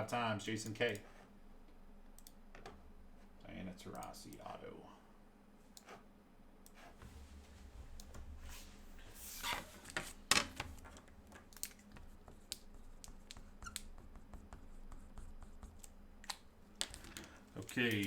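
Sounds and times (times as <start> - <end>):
keyboard and mouse clicks: 2.1 - 2.8, 10.3 - 18.0.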